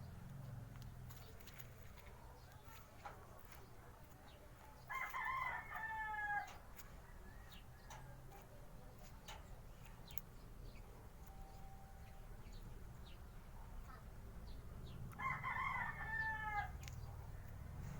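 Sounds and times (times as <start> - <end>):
rooster crowing: 4.9 - 6.6, 15.1 - 16.9
faint clicks: 16.8 - 17.6.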